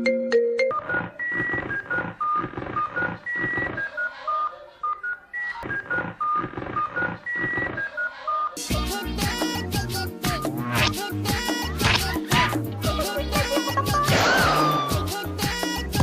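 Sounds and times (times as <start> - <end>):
drum beat: 11.8 - 16.0.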